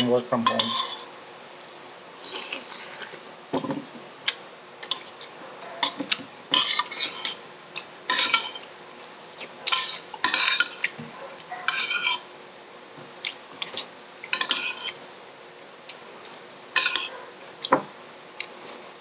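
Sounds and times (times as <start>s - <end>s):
cutlery clinking on a dish: 8.1s - 8.6s, 9.7s - 11.0s, 11.7s - 12.2s, 16.8s - 17.1s.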